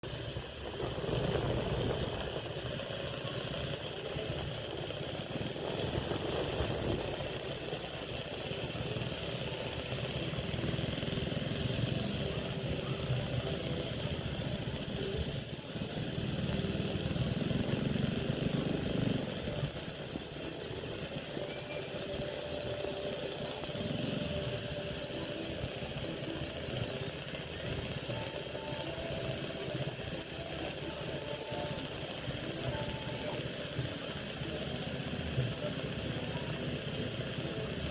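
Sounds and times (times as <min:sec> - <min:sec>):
engine rumble: 0:00.0 - 0:37.9.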